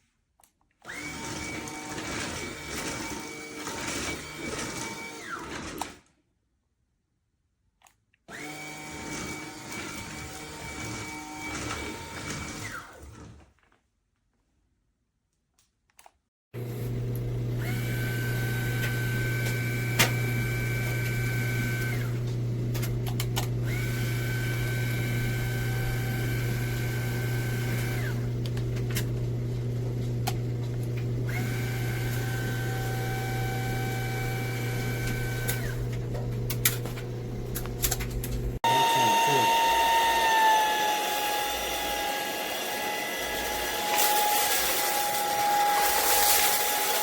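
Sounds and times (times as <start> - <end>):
vacuum cleaner motor hum: 0.9 - 5.4, 16.6 - 47.0.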